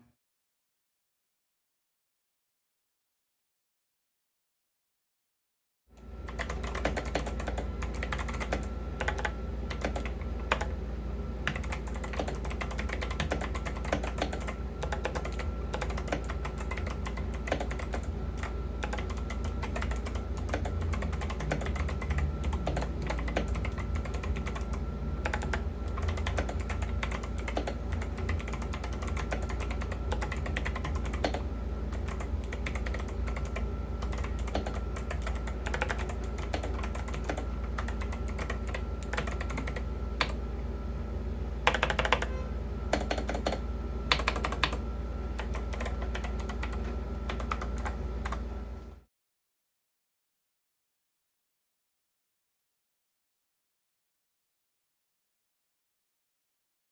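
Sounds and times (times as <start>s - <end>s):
steady low hum: 5.9s - 49.1s
mechanical keyboard typing: 6.3s - 10.8s, 11.4s - 40.4s, 41.6s - 44.8s, 45.4s - 48.4s.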